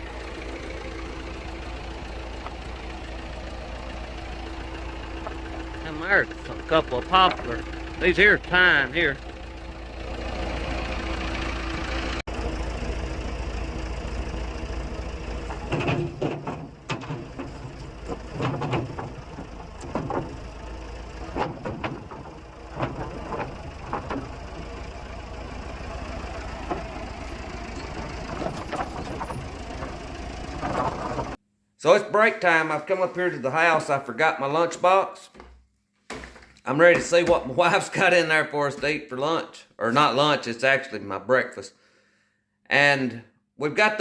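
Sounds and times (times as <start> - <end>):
sawmill engine running: 0.0 - 31.4
irregular knocks and clunks: 0.5 - 9.3, 14.5 - 31.4, 35.3 - 37.6.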